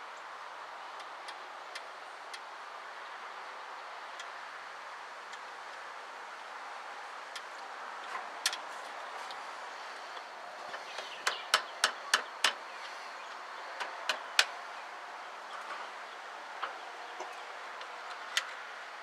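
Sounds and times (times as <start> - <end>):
hand tools clicking on metal: 10.7 - 12.6.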